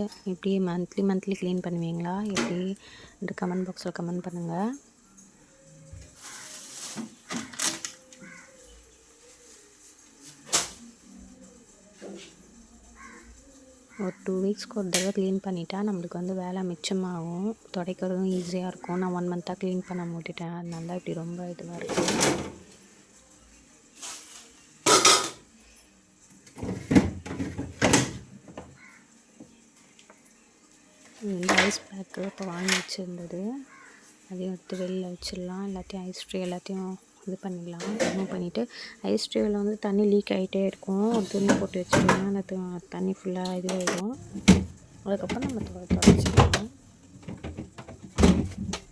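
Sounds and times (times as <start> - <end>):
plastic compartments scraping: 21.8 - 22.7, 41.0 - 42.3, 43.7 - 48.9
objects knocking and clattering: 26.5 - 28.8, 43.8 - 48.9.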